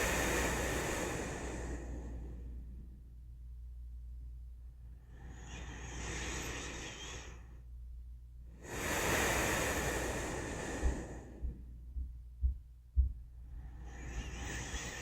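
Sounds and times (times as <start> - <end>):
person breathing slowly: 0.0 - 3.1, 4.9 - 7.7, 8.6 - 15.0
soft low thumps: 10.6 - 14.3.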